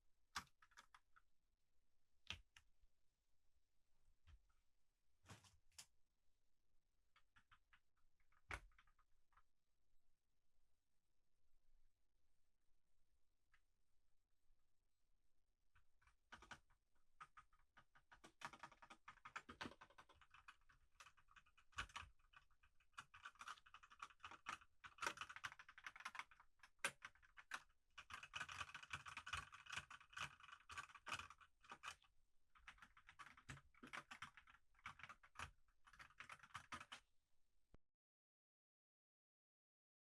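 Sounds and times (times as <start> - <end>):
typing on computer keyboard: 16.0 - 37.0.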